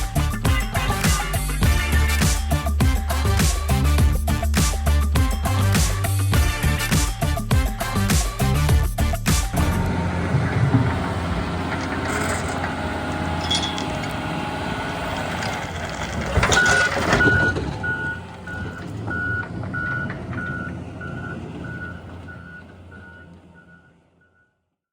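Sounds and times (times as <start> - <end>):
heavy machine engine running: 0.0 - 24.4
loud clatter: 9.3 - 21.4
reversing alarm beeping: 16.5 - 24.6.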